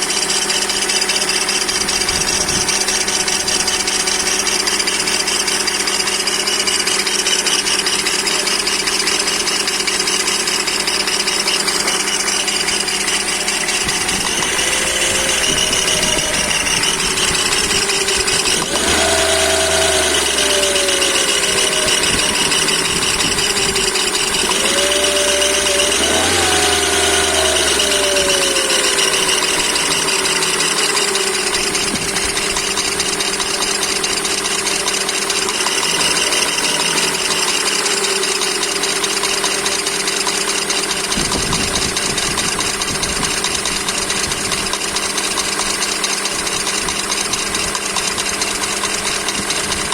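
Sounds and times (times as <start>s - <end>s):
car engine knocking and revving: 0.0s - 49.9s.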